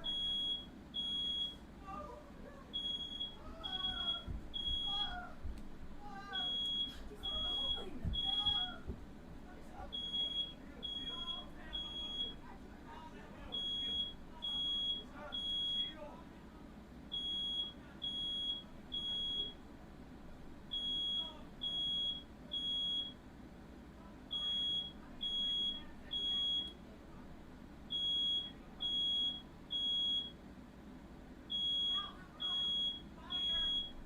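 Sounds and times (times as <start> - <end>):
smoke alarm beeping: 0.0 - 1.6, 2.7 - 5.2, 6.3 - 8.9, 9.9 - 12.4, 13.5 - 16.0, 17.1 - 19.6, 20.7 - 23.2, 24.3 - 26.8, 27.9 - 30.4, 31.5 - 34.0.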